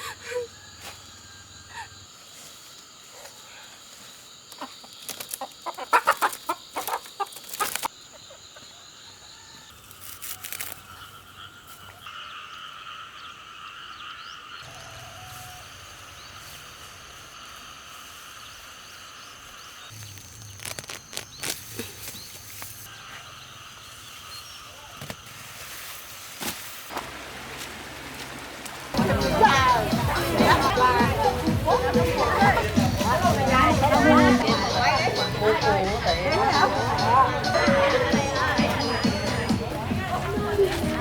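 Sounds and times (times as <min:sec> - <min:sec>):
chickens clucking: 0:04.5 - 0:08.7, 0:29.0 - 0:41.0.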